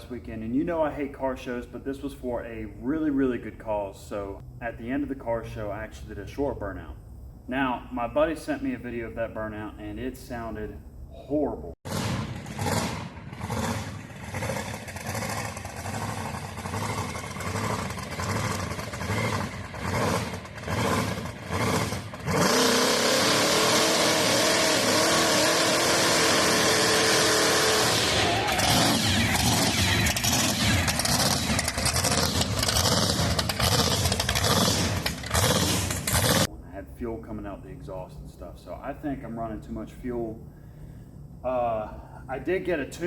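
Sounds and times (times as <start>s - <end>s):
engine running rough: 11.9s - 36.5s
tyres screaming in burnout: 12.6s - 36.5s.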